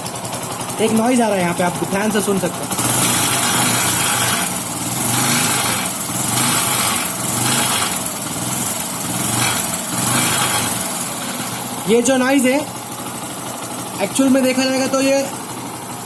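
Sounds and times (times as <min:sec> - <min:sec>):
rattling exhaust mounting: 0:00.0 - 0:14.0
motorcycle engine idling: 0:00.0 - 0:16.0.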